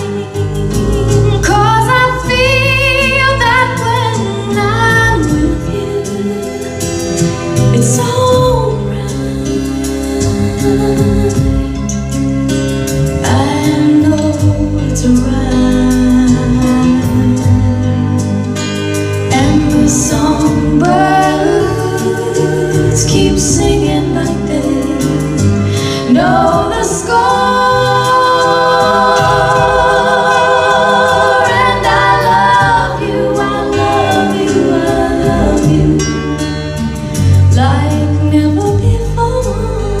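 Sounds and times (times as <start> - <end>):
woman singing a slow ballad: 0.0 - 11.9, 13.2 - 18.0, 19.3 - 40.0
low musical accompaniment: 0.0 - 40.0.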